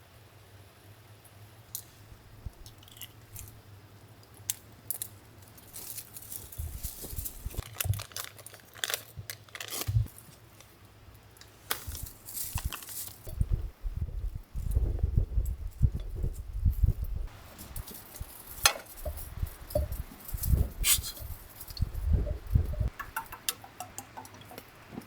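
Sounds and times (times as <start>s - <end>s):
crinkling and rustling: 4.9s - 10.8s, 11.4s - 13.4s, 14.6s - 23.0s.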